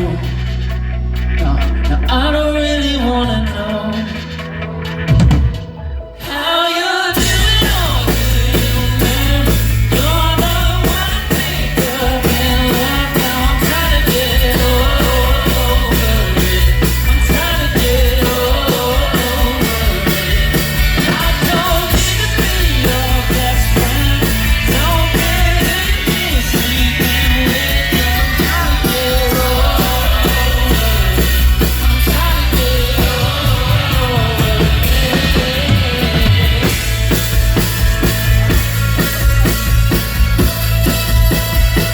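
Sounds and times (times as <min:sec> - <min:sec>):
heavy bass: 0:00.0 - 0:06.3, 0:07.2 - 0:41.9
person singing: 0:01.4 - 0:41.9
drum kit beat: 0:07.2 - 0:41.9.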